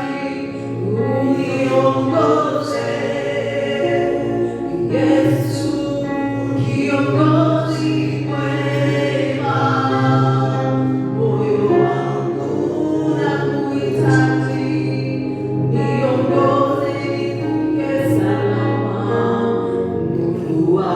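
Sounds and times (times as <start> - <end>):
choir singing: 0.0 - 20.9.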